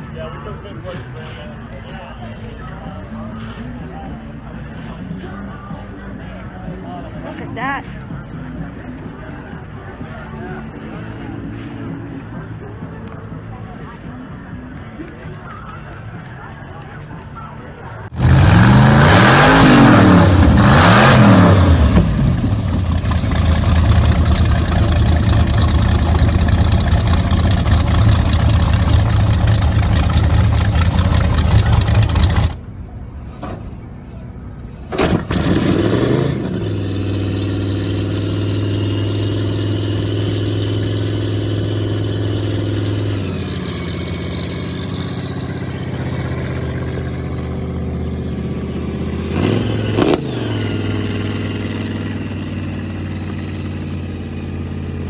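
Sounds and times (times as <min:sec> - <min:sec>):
engine idling: 0:18.0 - 0:32.7, 0:36.5 - 0:49.5
hot rod engine revving: 0:18.1 - 0:32.6, 0:34.9 - 0:55.0.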